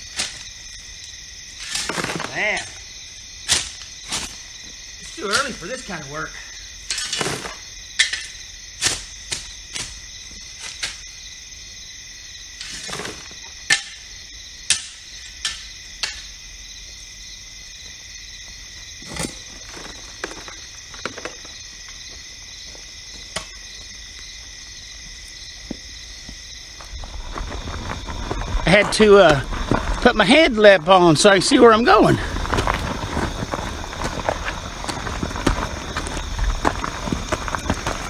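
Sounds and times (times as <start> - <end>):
crickets chirping: 0.0 - 38.0
shovel scraping gravel: 1.5 - 2.9, 3.5 - 6.0, 6.8 - 11.1, 12.6 - 14.0, 19.0 - 21.6, 26.8 - 38.0.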